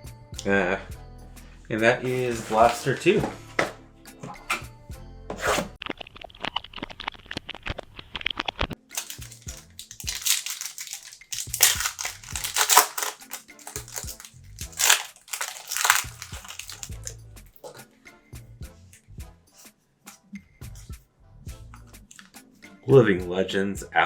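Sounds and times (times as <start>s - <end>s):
plastic wrappers crinkling: 2.1s - 3.1s, 8.9s - 17.1s
plastic wrappers tearing: 2.1s - 3.1s, 8.9s - 17.1s.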